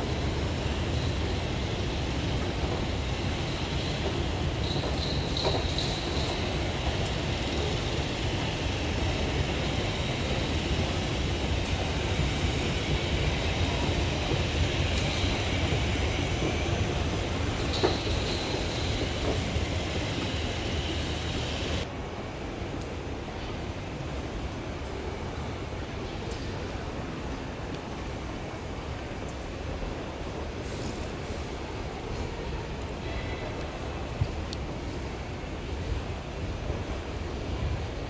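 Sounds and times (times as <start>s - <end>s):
train running rumble: 0.0s - 22.0s.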